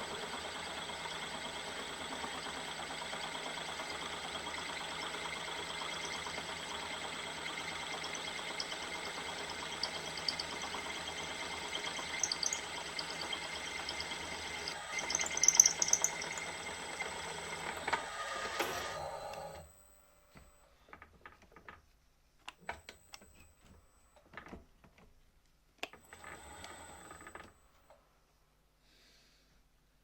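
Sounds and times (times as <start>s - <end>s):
drill bit cutting with squeals: 3.2s - 18.6s.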